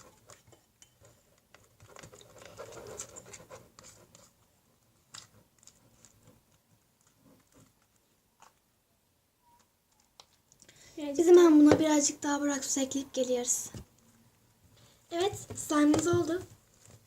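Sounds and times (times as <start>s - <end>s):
spoon stirring slime in bowl: 0.0s - 8.6s.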